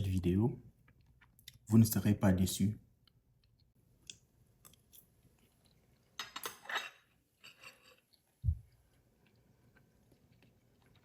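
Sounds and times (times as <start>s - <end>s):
cutlery clinking on plate: 6.2s - 8.0s.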